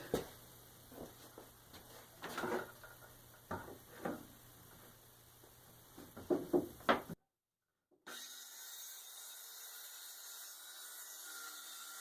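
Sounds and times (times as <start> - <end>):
faint knocks and clatter of plywood: 1.0 - 4.3, 6.0 - 7.2.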